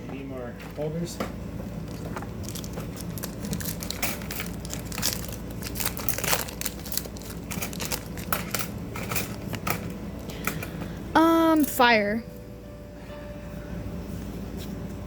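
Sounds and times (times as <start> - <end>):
foil wrapper crinkling: 1.8 - 9.6.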